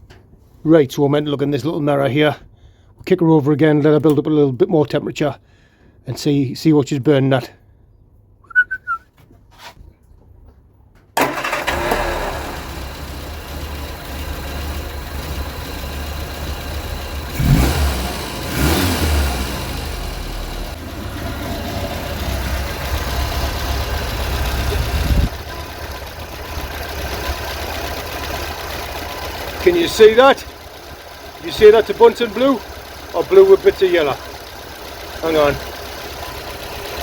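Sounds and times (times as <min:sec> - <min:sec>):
car engine starting and revving: 0:11.2 - 0:37.0.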